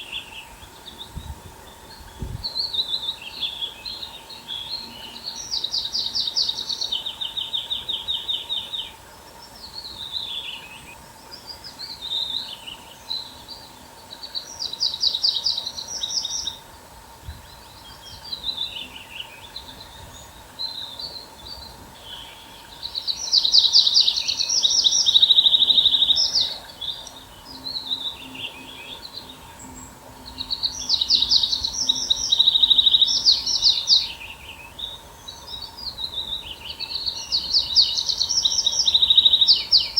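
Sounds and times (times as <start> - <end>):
birds chirping softly: 0.0 - 39.9
songbird trilling: 17.5 - 39.9.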